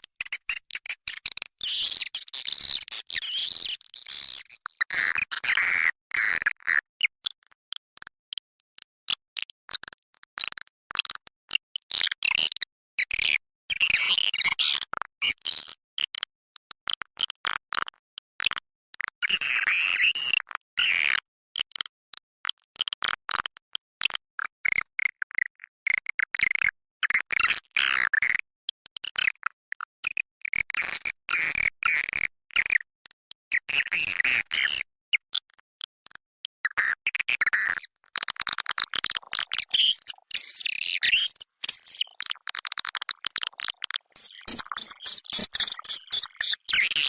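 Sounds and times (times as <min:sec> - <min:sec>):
swiftlet chattering chirps: 0:39.5 - 0:43.0, 0:43.9 - 0:47.0.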